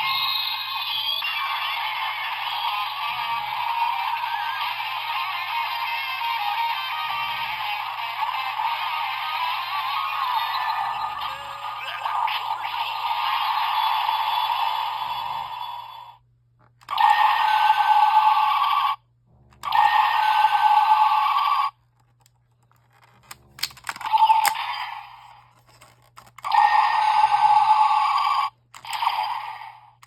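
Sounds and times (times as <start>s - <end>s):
toy electronic sound effects: 0.0s - 16.2s, 16.8s - 19.0s, 19.6s - 21.8s, 23.3s - 25.3s, 26.4s - 29.9s
toy handling clicks: 22.2s - 24.8s, 28.6s - 29.5s.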